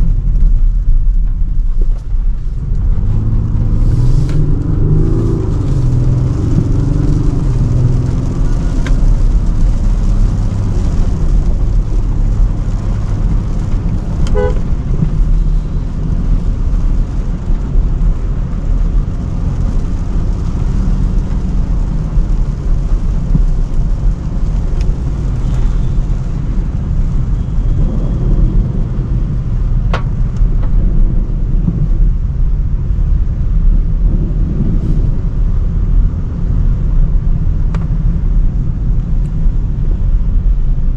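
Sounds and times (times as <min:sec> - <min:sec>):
engine and road rumble: 0:00.0 - 0:40.9
short car horn toot: 0:14.3 - 0:14.6.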